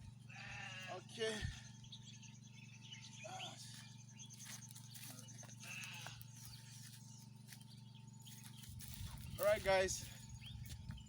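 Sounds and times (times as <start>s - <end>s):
steady low hum: 0.0s - 11.0s
animal bleating: 0.2s - 1.2s, 5.6s - 6.6s.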